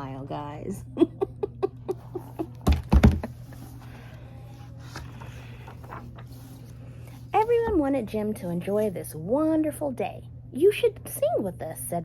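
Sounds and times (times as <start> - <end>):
steady low hum: 0.0 - 12.0
heavy book thumps: 2.6 - 3.4.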